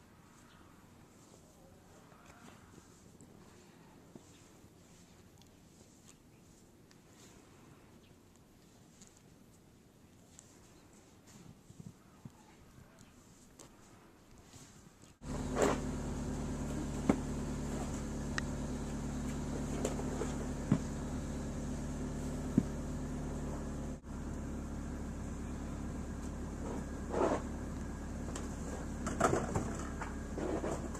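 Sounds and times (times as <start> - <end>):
machine hum: 15.2 - 30.9.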